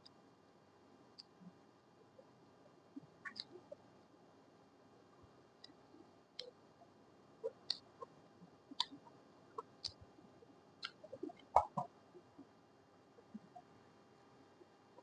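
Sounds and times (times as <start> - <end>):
light clicks and small knocks: 3.0 - 3.8, 5.1 - 10.2.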